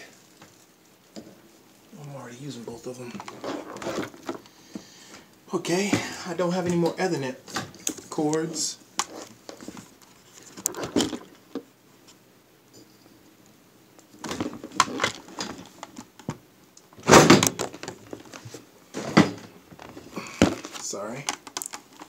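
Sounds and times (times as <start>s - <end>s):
objects knocking and clattering: 9.0s - 11.7s.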